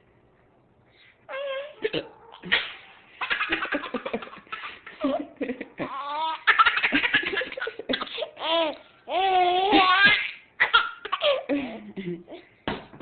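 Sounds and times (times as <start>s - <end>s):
baby giggling and squealing: 1.3s - 11.5s.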